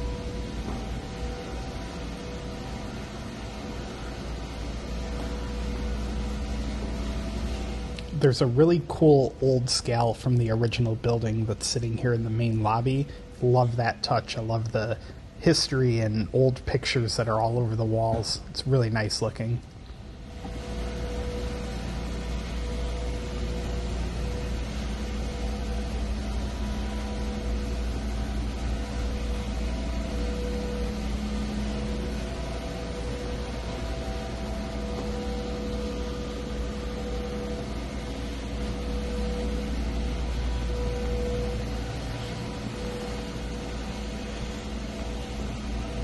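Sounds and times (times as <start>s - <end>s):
faint humming tones: 0.0s - 46.0s
low rumble and hiss: 0.0s - 46.0s.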